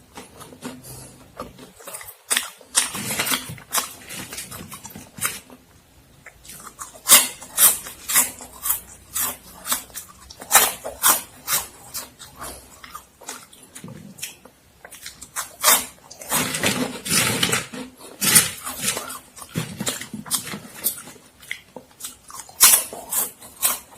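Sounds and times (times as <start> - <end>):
crunching and chewing snack: 0.0 - 23.9.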